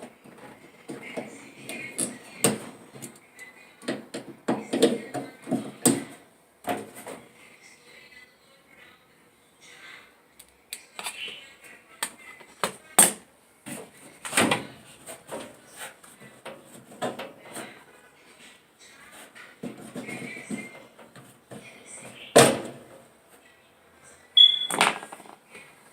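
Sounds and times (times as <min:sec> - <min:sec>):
parts and tools knocking and rattling: 0:03.8 - 0:07.2, 0:16.3 - 0:17.8, 0:19.6 - 0:21.7, 0:24.6 - 0:25.4.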